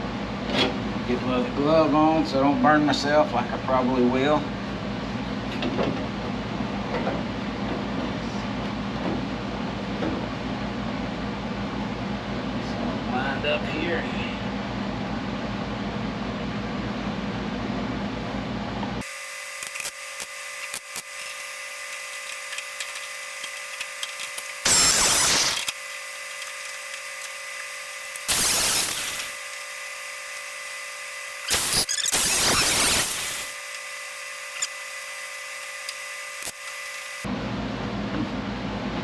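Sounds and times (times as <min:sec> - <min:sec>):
crackling welding arc: 0:19.0 - 0:37.3.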